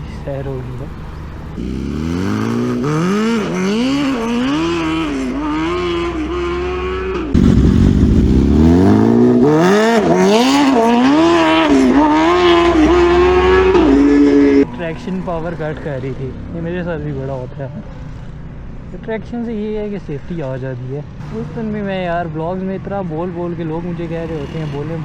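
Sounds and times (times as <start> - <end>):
motorcycle engine accelerating hard: 0.5 - 14.7
deep rumble: 7.3 - 10.2.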